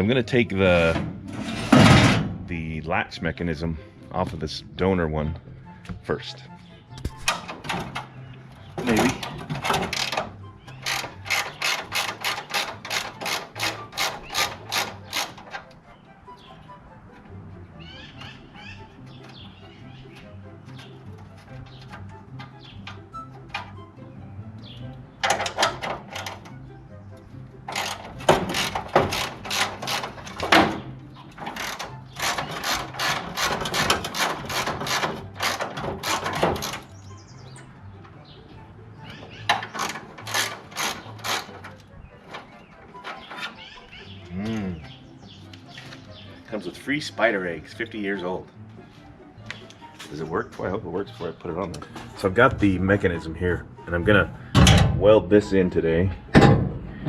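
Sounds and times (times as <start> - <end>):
ratchet wrench clicking: 10.8 - 15.4.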